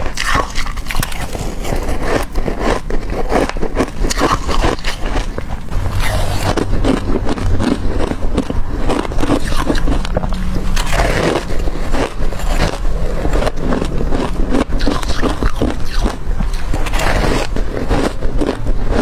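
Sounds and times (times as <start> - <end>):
crushed ice being chewed: 0.0 - 19.0.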